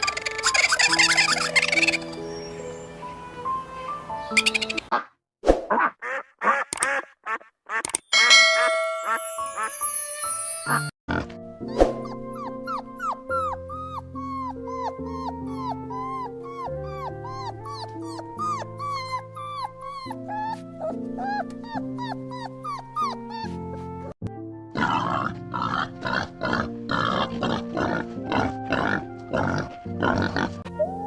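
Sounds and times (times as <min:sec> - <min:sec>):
bouncy background music: 0:11.1 - 0:31.0
pig grunting: 0:24.7 - 0:30.7.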